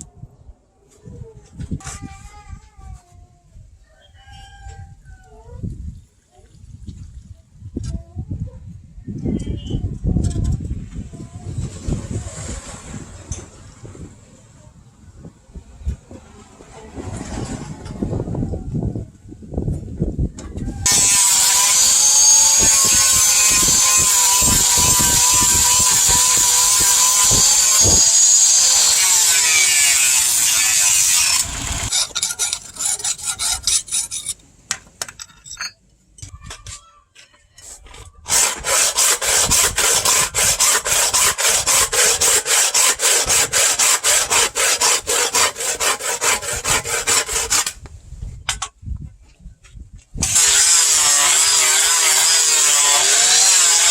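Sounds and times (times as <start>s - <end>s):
tool with wavering whine: 20.8s - 33.1s
filing on steel: 20.9s - 34.4s, 38.3s - 47.8s.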